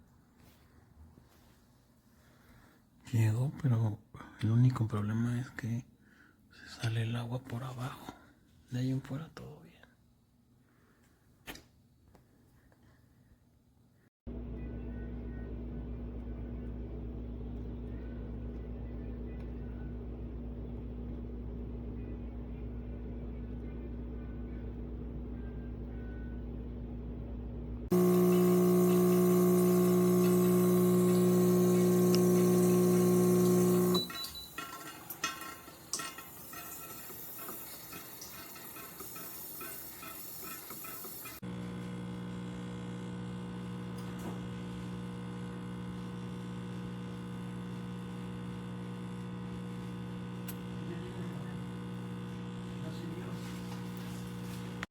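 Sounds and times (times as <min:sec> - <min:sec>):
espresso machine pump humming: 0:27.8 - 0:54.9.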